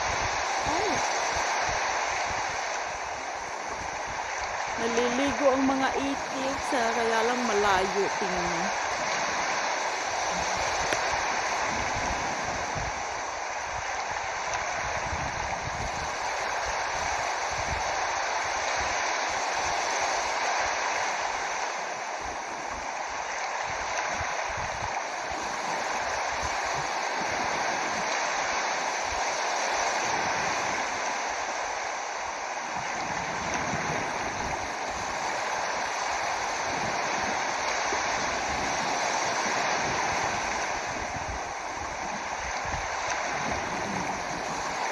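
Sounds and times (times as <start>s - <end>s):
flowing water rushing: 0.0s - 44.9s.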